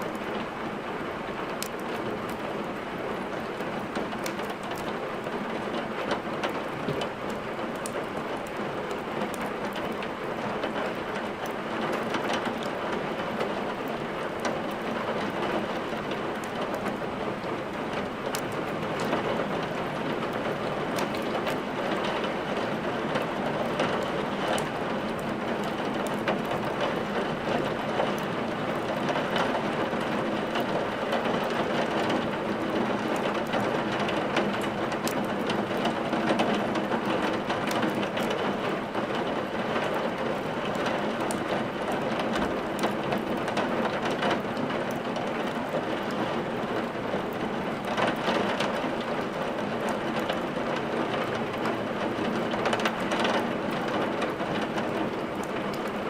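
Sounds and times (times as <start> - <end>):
steady rain: 0.0 - 56.0
wood fire crackling: 1.5 - 2.8, 3.5 - 5.4, 6.1 - 10.2.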